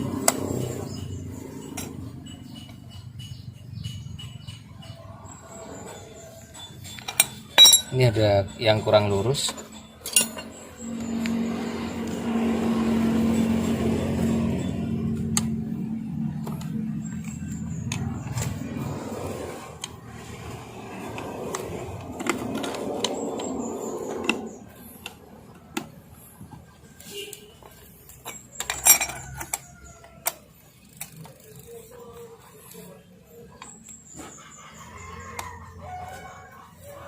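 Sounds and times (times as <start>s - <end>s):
sharp metallic clatter: 0.0s - 25.0s, 27.8s - 31.9s
metal rubbing and scraping: 0.0s - 26.7s.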